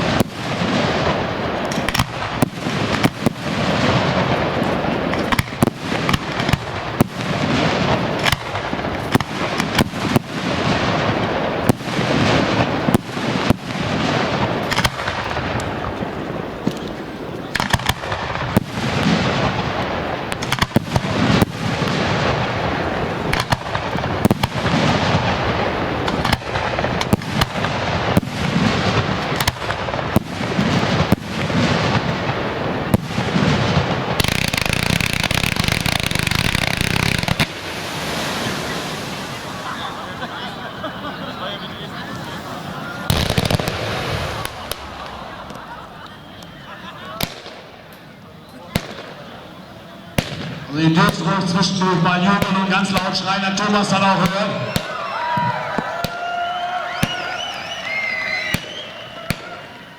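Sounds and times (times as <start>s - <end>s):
firework bangs: 0.0s - 41.2s, 42.0s - 59.9s
noisy wash of bursts: 34.2s - 46.0s.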